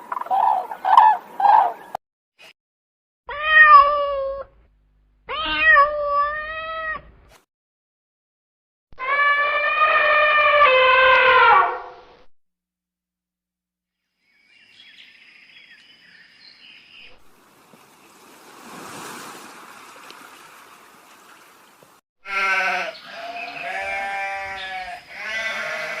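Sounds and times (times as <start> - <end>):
animal calling loudly: 9.0 - 11.8.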